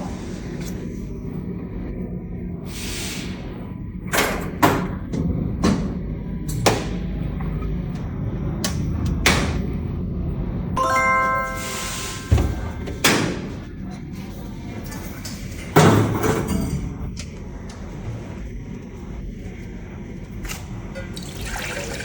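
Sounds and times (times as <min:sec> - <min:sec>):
background music: 0:10.8 - 0:13.0
brief chime: 0:10.8 - 0:13.0.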